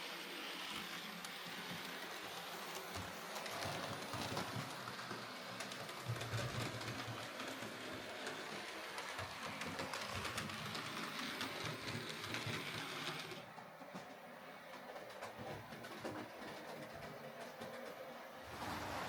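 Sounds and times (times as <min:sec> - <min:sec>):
wheels clicking on rails: 0:00.7 - 0:19.0
model train motor whirring: 0:06.9 - 0:13.4.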